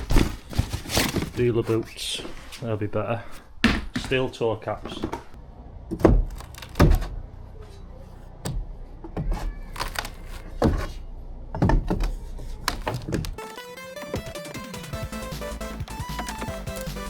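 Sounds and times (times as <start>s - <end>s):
irregular knocks and thumps: 11.5s - 13.4s.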